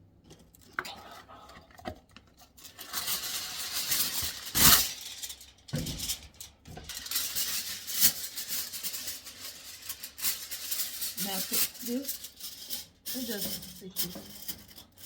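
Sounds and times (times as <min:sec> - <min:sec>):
household items rustling: 0:00.3 - 0:15.0
knocking of household items: 0:05.7 - 0:07.0.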